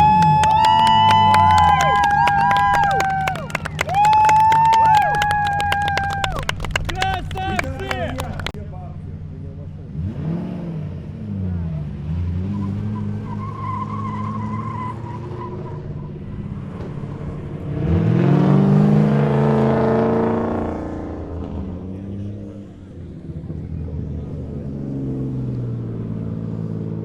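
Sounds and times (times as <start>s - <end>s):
car engines idling: 0.0s - 10.1s
car engine revving: 5.4s - 22.7s.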